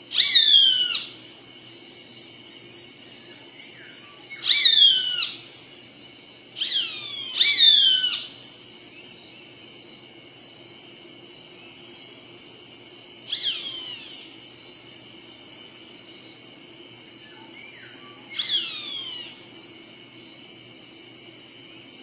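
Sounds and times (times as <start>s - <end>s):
background hiss: 0.0s - 22.0s
loud falling bird calls: 0.1s - 1.1s, 4.4s - 5.4s, 6.6s - 8.3s.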